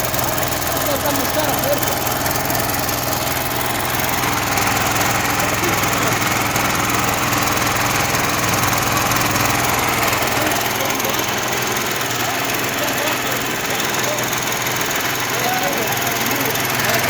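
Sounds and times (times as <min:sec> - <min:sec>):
pump engine running: 0:00.0 - 0:17.0.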